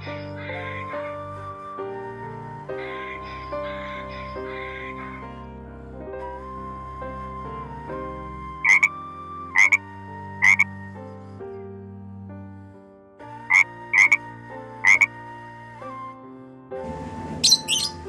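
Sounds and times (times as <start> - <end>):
soft background music: 0.0 - 18.0
loud animal calls: 8.7 - 8.9, 9.6 - 9.8, 17.4 - 18.0.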